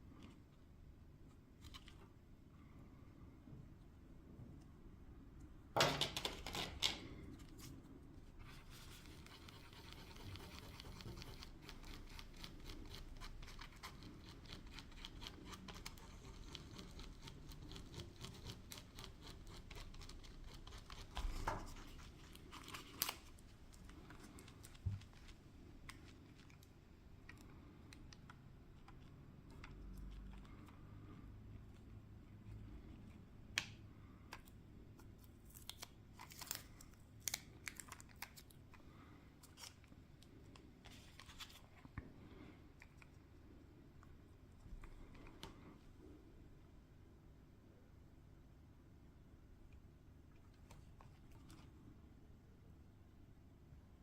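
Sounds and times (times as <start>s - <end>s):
faint scratching: 6.4s - 26.7s
crinkling tearing crackle: 21.8s - 26.7s, 35.2s - 38.6s.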